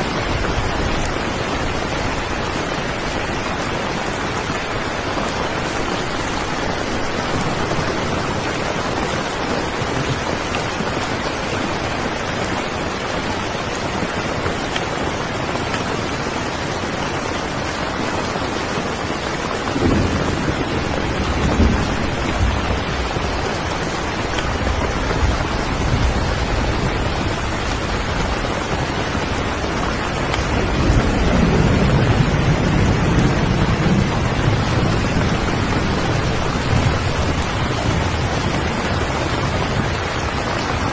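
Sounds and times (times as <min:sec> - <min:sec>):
steady rain falling: 0:00.0 - 0:40.9
low rolling thunder: 0:19.0 - 0:40.9.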